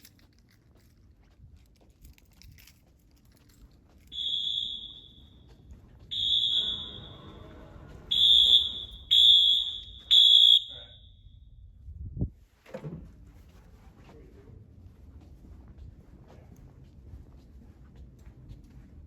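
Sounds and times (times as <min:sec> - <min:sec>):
fire alarm horn blasts: 0:04.1 - 0:11.4.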